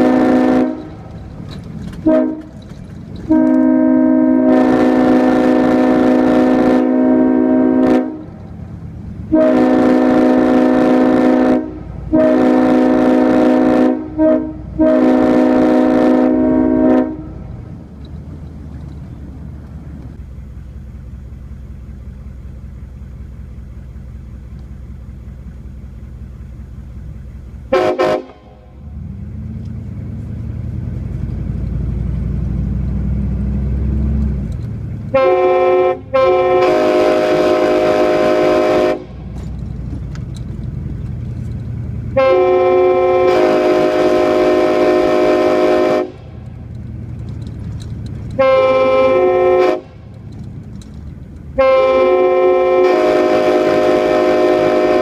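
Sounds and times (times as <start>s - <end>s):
locomotive air horn blasts: 0.0s - 1.2s, 1.9s - 8.4s, 9.3s - 17.6s, 27.7s - 28.9s, 35.1s - 39.6s, 42.1s - 46.6s, 48.3s - 50.2s, 51.5s - 55.0s
train rumbling: 0.0s - 55.0s.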